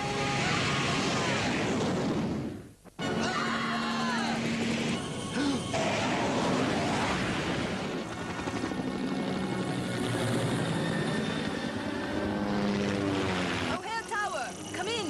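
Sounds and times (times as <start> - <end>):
cartoon aircraft engine drone: 3.7 - 15.0.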